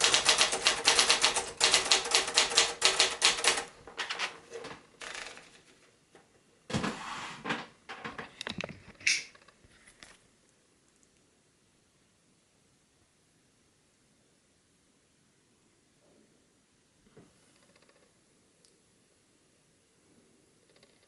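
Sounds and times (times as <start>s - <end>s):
manual typewriter keystrokes: 0.0s - 5.5s
typewriter clicks: 0.0s - 5.5s.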